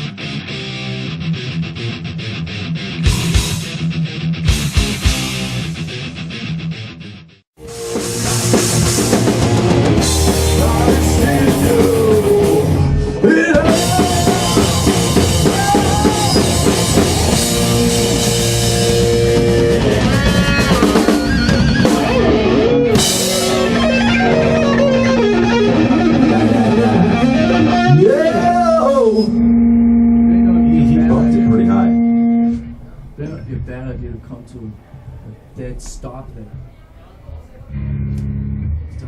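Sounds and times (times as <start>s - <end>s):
distorted electric guitars: 0.0s - 34.0s, 37.7s - 39.0s
bass guitar: 0.0s - 34.2s, 37.6s - 39.0s
drum kit: 2.8s - 6.6s, 7.6s - 28.6s.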